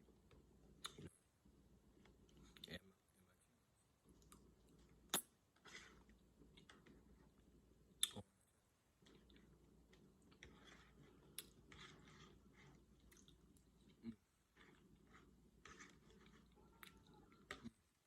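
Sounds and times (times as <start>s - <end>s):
person chewing: 4.1s - 8.2s, 9.0s - 17.8s.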